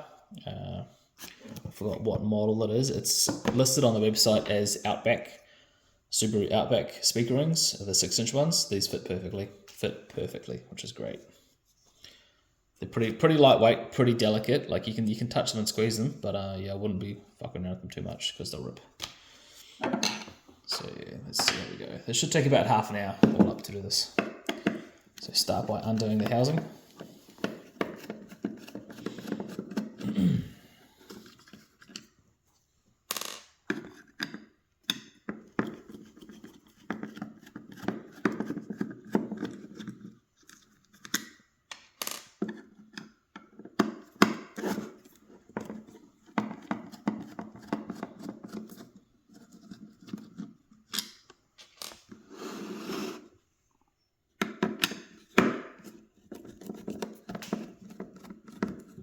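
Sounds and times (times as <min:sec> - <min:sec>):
rustling scrapes: 0:52.2 - 0:53.4.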